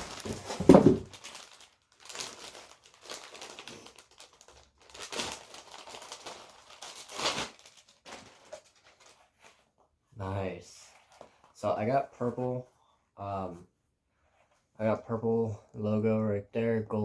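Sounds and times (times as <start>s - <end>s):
packaging crinkling and rustling: 0.0s - 9.6s.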